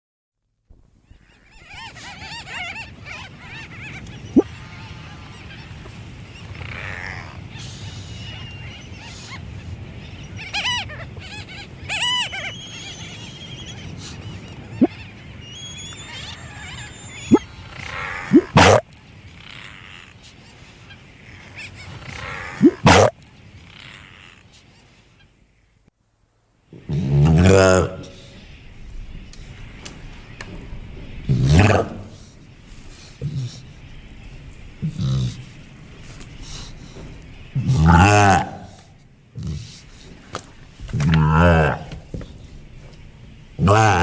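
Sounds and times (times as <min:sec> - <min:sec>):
seal crying: 0:10.4 - 0:14.1, 0:15.5 - 0:18.8, 0:21.6 - 0:24.4, 0:26.8 - 0:28.4, 0:31.3 - 0:32.3, 0:34.8 - 0:35.7, 0:37.6 - 0:40.2, 0:40.8 - 0:42.0, 0:43.6 - 0:44.0.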